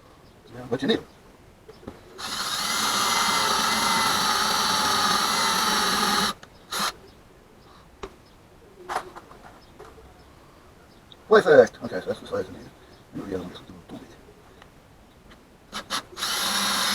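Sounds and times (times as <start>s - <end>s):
electric drill drilling: 2.2s - 7.0s, 15.7s - 16.9s.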